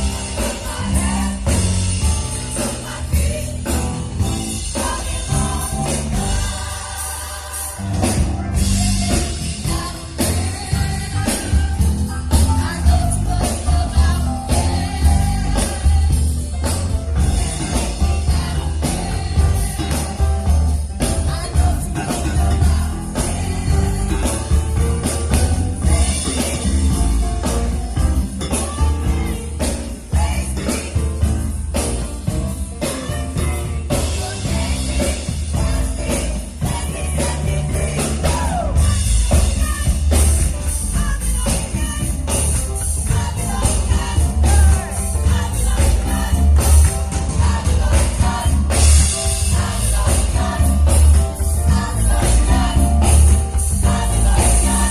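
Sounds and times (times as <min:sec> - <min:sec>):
bass: 0:00.0 - 0:54.9
steady drum beat: 0:00.0 - 0:54.9.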